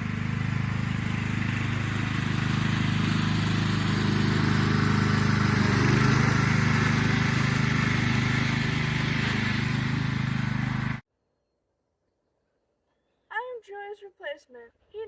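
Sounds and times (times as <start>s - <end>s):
riding lawn mower engine: 0.0s - 11.0s.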